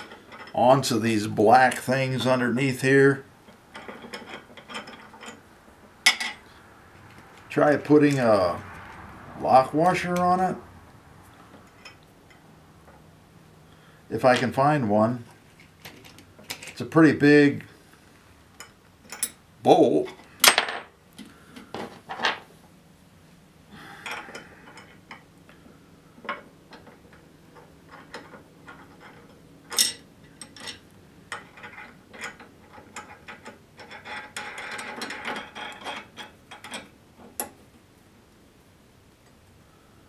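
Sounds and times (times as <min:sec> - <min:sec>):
metal parts rattling: 0:00.0 - 0:06.5, 0:15.4 - 0:16.9, 0:24.0 - 0:25.3, 0:26.2 - 0:37.5
metal clicks and clinks: 0:27.6 - 0:37.6.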